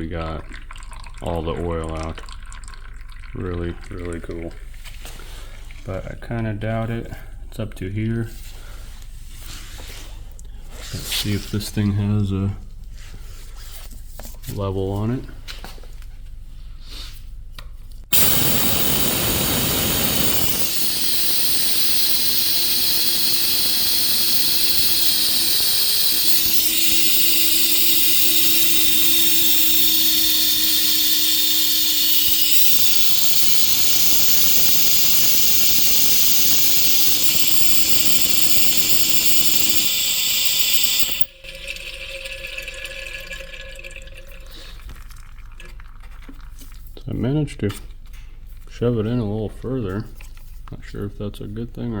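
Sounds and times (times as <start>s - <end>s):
pneumatic oil extractor hissing: 18.1s - 41.4s.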